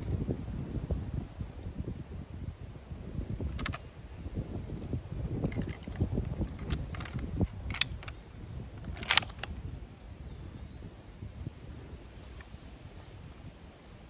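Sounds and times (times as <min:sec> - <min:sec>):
low wind rumble: 0:00.0 - 0:14.0
rifle metallic clicks and rattles: 0:03.5 - 0:03.8, 0:04.7 - 0:08.2, 0:08.8 - 0:09.5.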